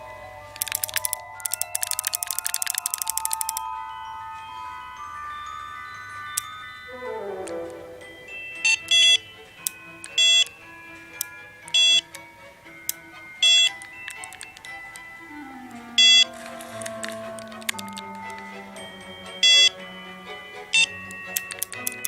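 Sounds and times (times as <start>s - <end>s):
melodic background music: 0.0s - 22.0s
buzzy electronic beep: 15.5s - 16.3s.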